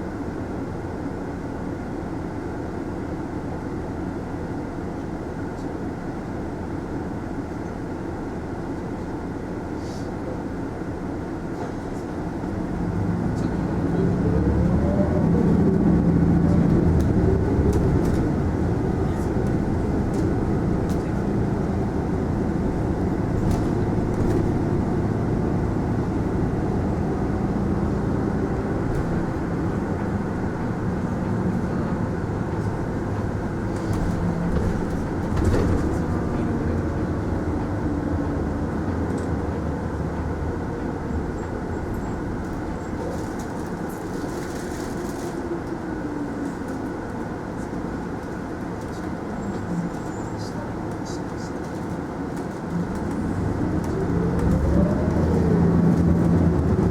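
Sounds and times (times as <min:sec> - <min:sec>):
bus diesel engine drone: 0:00.0 - 0:56.9
road noise: 0:00.0 - 0:56.9.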